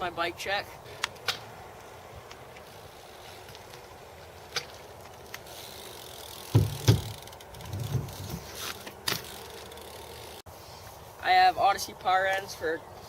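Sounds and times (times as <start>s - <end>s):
bike clicking and knocking: 1.0s - 2.8s, 3.4s - 10.4s.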